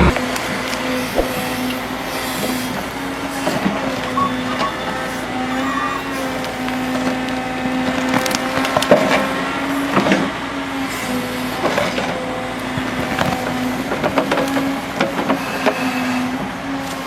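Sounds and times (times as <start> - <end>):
wood cracking: 12.8 - 13.8.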